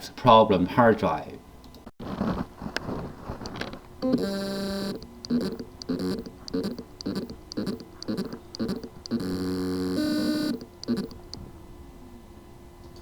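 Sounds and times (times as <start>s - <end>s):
hard drive motor pulsing: 3.5s - 11.5s
buzzing tone: 4.0s - 11.4s.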